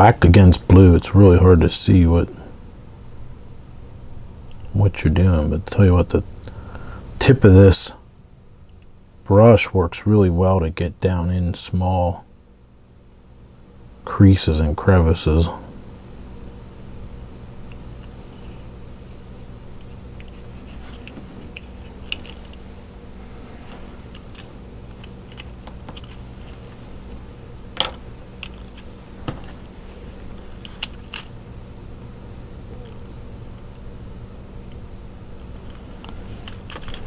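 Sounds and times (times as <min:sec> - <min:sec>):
steady low hum: 0:00.0 - 0:37.0
light brush scratching: 0:18.0 - 0:27.4.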